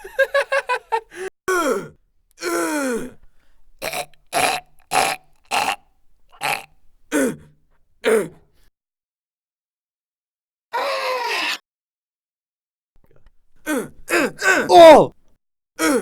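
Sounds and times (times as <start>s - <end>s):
person grunting and groaning: 1.5s - 3.2s, 6.5s - 8.4s, 13.6s - 15.2s, 15.8s - 16.0s.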